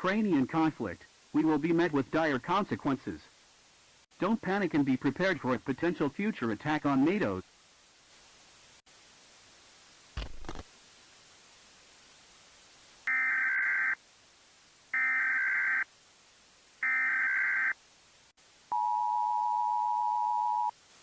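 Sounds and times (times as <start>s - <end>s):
two-tone attention signal: 18.7s - 20.7s.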